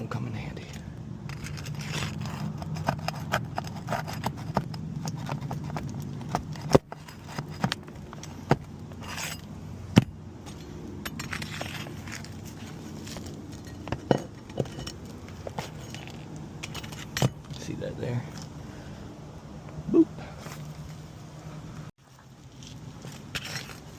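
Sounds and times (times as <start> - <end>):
steady low hum: 0.0 - 23.9
metal tool scraping under shingles: 1.2 - 17.7, 22.1 - 23.9.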